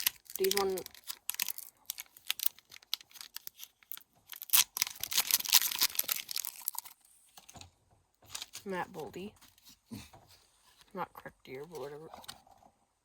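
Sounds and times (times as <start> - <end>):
card pack wrapper crinkling: 0.0 - 7.1, 8.3 - 8.7
cards clicking and rustling: 0.0 - 8.7.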